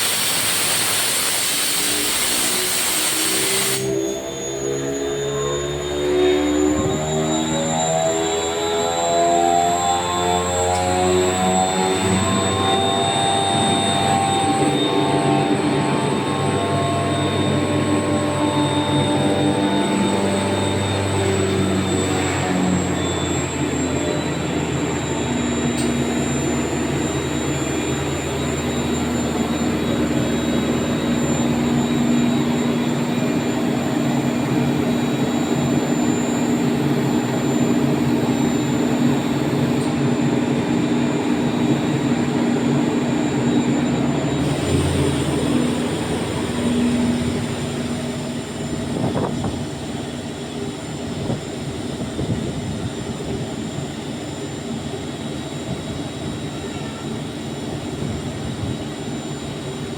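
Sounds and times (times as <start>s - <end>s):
air compressor humming: 0.0s - 4.5s, 9.8s - 50.4s
high thin whine: 0.0s - 7.6s.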